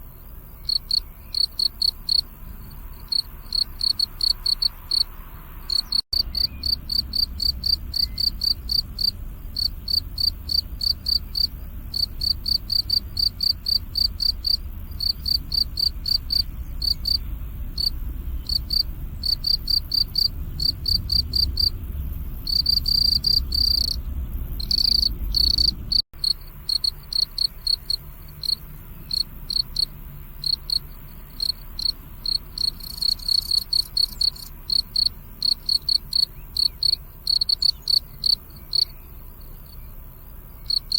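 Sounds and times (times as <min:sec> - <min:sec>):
crickets chirping: 0:00.0 - 0:40.9
low rumble: 0:05.2 - 0:26.7.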